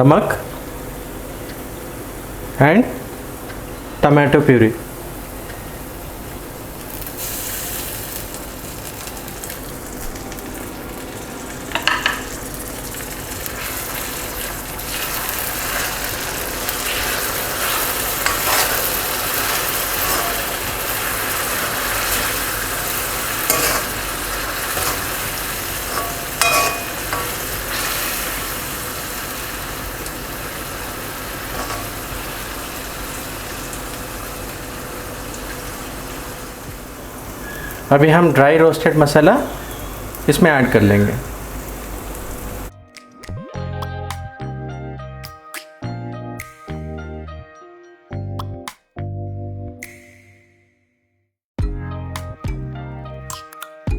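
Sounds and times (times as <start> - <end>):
masala sizzling in hot oil: 5.2 - 42.7
spatula knocking and scraping pan: 23.1 - 28.1.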